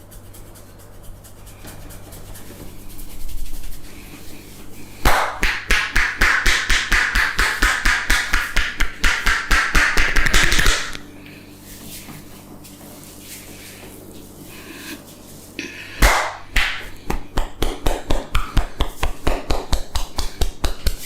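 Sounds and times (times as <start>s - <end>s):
hands slapping rhythmically: 5.0s - 11.0s, 16.0s - 21.0s.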